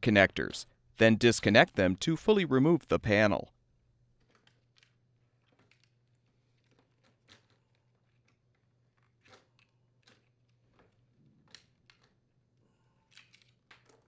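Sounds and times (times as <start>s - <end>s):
plastic parts clicking: 4.2s - 12.4s, 13.1s - 14.0s.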